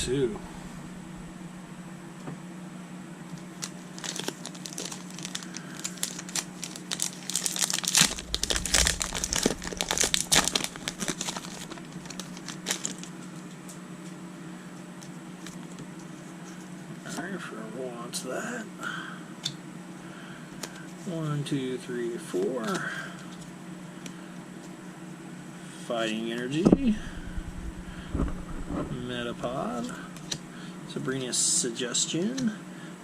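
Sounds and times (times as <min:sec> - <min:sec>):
steady low hum: 0:00.0 - 0:33.0
foil wrapper crinkling and tearing: 0:03.5 - 0:13.4.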